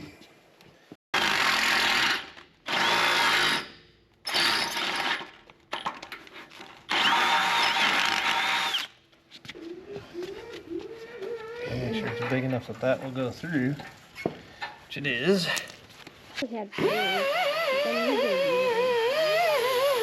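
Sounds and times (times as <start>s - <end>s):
electric drill boring steel: 1.2s - 3.7s, 6.9s - 8.9s, 16.8s - 20.0s
drill bit squealing: 16.8s - 20.0s.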